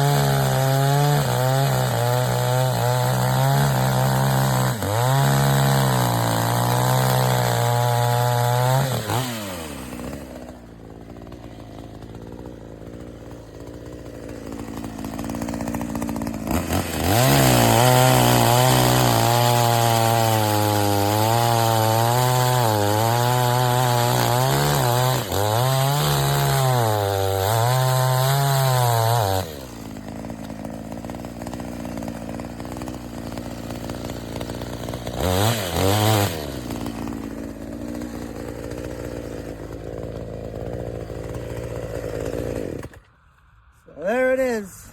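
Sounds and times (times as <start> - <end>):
chainsaw cutting a log: 0.0 - 43.2.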